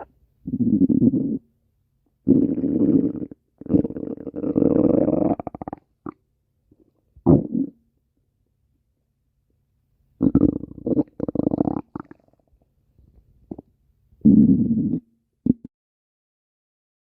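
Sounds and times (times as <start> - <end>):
stomach growling: 2.3 - 6.2, 10.2 - 12.6, 13.5 - 15.7.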